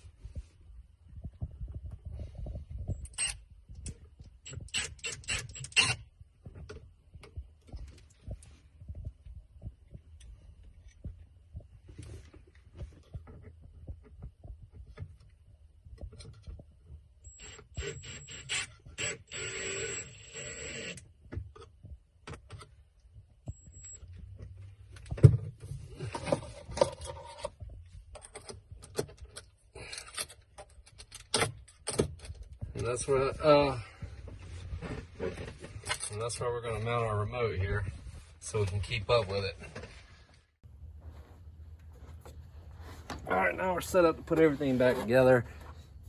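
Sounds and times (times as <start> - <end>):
cordless drill whining: 17.3 - 21.0
clicks and rattles of tools: 25.0 - 32.7.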